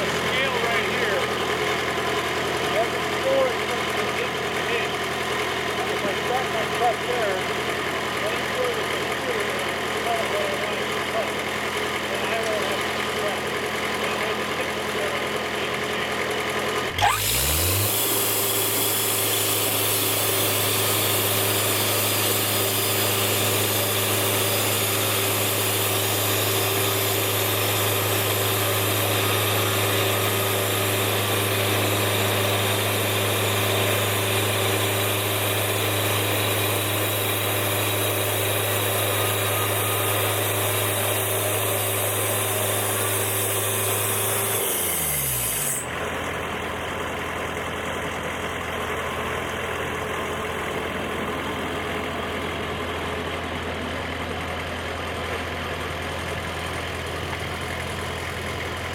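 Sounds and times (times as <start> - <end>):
sawmill engine running: 0.0 - 58.9
saw blade cutting log: 16.6 - 46.7.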